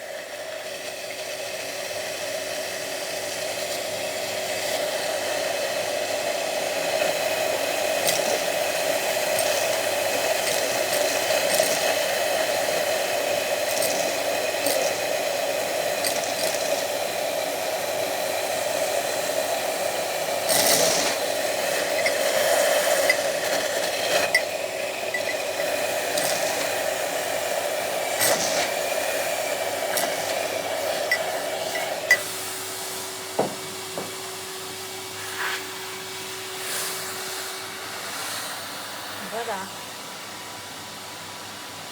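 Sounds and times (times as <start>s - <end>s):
vacuum cleaner running: 0.0s - 41.9s
seeds rattling in vacuum wand: 6.2s - 19.4s, 20.2s - 32.2s.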